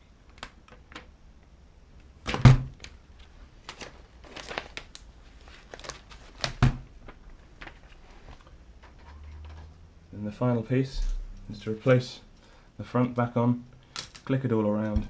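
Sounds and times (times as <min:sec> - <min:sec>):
plastic film crinkling: 0:02.8 - 0:08.4.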